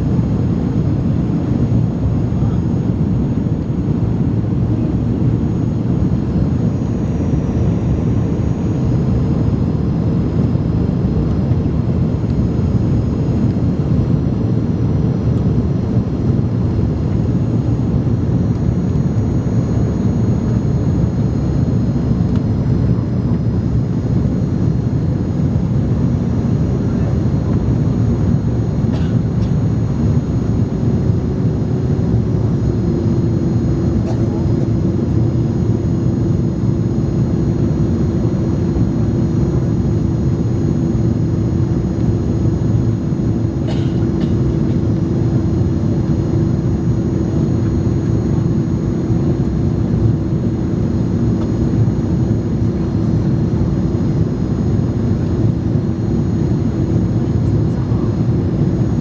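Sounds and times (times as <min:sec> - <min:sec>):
airplane cabin engine rumble: 0:00.0 - 0:59.0.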